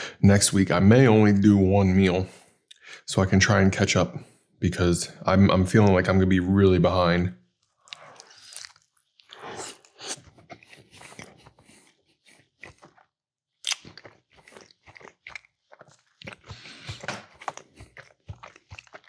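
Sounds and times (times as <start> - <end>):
person chewing crunchy food: 7.7 - 19.0.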